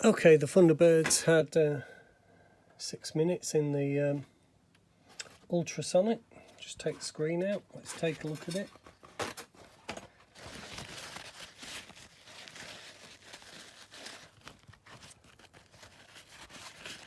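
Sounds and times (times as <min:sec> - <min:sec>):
faint rustling with small clicks: 0:06.5 - 0:17.0.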